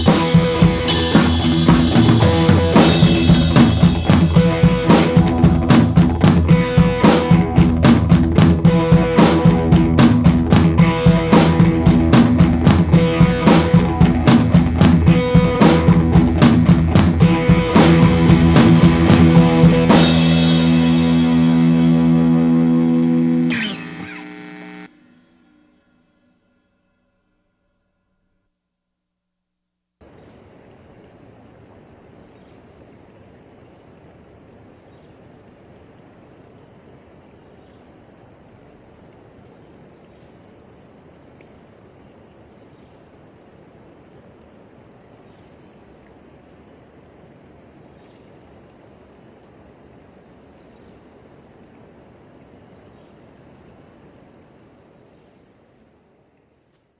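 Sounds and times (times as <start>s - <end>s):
steady hiss: 0.0s - 16.9s, 19.5s - 22.8s
crickets trilling: 0.0s - 26.3s, 30.0s - 56.9s.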